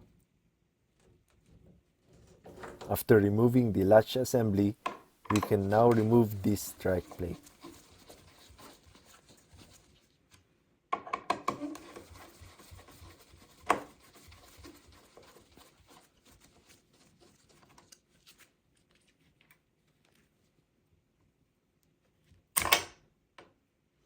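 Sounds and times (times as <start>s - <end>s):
screwdriver scraping: 5.3s - 9.2s, 11.4s - 15.4s.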